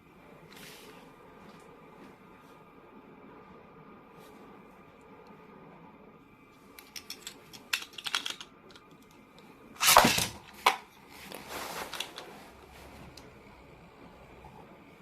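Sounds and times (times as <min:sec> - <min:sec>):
plastic parts clicking: 0:06.8 - 0:09.2
packaging rustling: 0:09.8 - 0:12.3.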